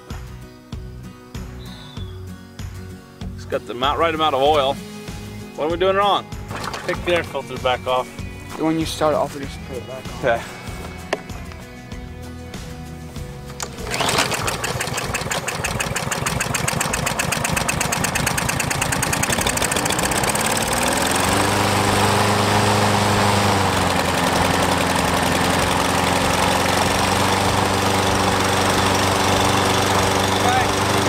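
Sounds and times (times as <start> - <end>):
lawn mower engine running: 6.4 - 8.0, 13.5 - 31.0.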